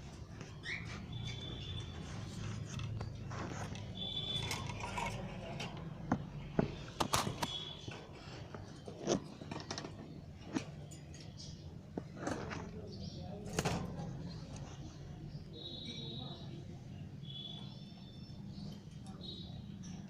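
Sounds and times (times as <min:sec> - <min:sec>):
sharp clicks and scrapes: 0:00.4 - 0:15.0.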